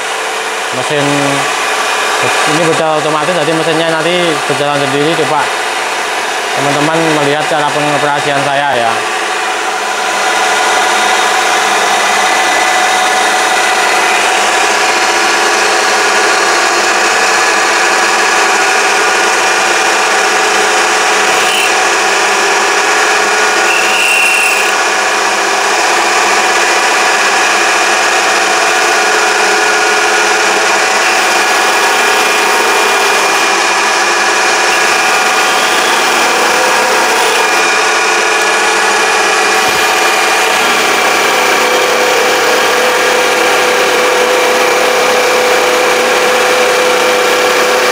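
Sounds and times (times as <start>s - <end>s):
lathe motor whine: 0.0s - 47.9s.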